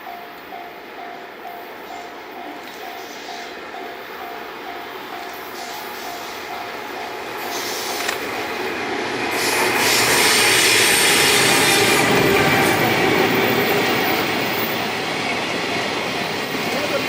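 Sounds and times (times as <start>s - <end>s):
level-crossing bell ringing: 0.0s - 7.7s
train wheels on rails: 0.0s - 17.0s.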